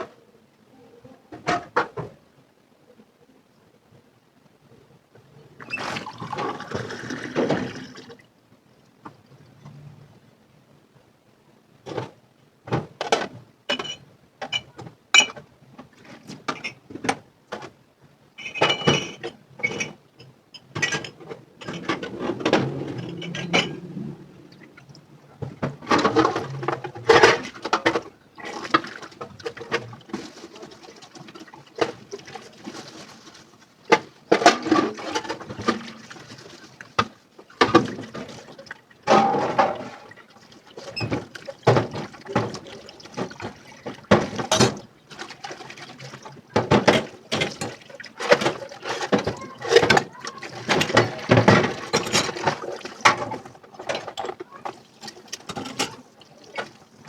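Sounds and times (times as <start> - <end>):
dishes clinking in a sink: 13.0 - 15.5, 16.4 - 17.7, 18.4 - 24.2, 37.0 - 56.8
running water splashing: 34.9 - 57.0.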